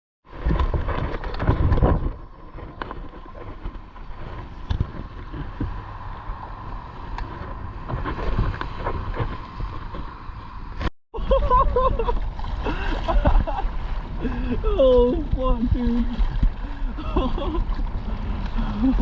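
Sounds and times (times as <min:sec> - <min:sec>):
sea water sloshing: 0:00.3 - 0:19.0
wind buffeting microphone: 0:11.5 - 0:19.0.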